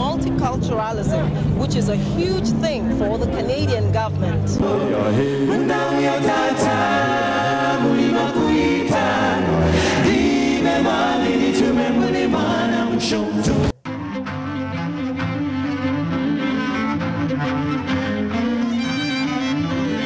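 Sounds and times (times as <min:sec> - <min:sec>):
quiet music: 0:00.0 - 0:20.0
choir singing in harmony: 0:04.5 - 0:13.8.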